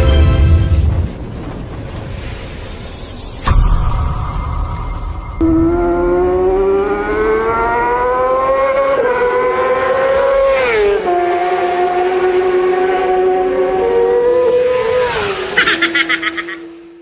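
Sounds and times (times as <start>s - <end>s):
vehicle engine accelerating: 5.4s - 17.0s.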